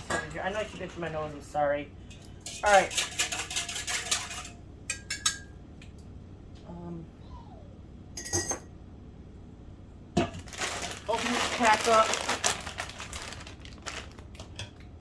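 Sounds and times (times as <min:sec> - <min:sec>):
dishes clinking and knocking: 0:08.2 - 0:08.8.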